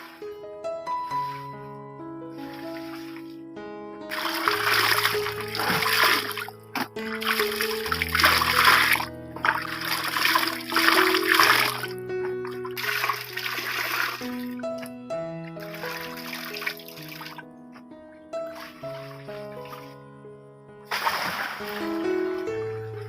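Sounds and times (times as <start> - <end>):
soft instrumental music: 0.0 - 23.0
water splashing and running: 2.4 - 3.3, 4.1 - 14.6, 15.6 - 17.4, 18.5 - 20.0, 20.9 - 22.5.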